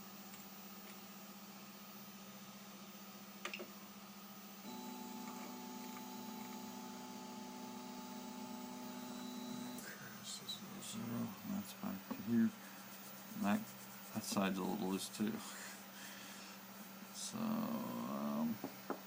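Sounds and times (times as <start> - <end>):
electrical hum: 0.0 - 19.0
stepper motor whine: 4.6 - 10.7.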